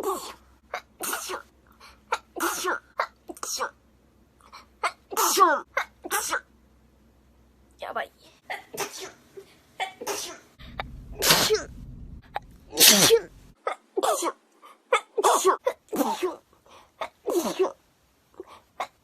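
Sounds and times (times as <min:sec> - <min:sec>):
woman sneezing: 0:04.8 - 0:06.4, 0:08.5 - 0:09.2, 0:09.8 - 0:10.5, 0:12.7 - 0:16.4, 0:17.0 - 0:17.8.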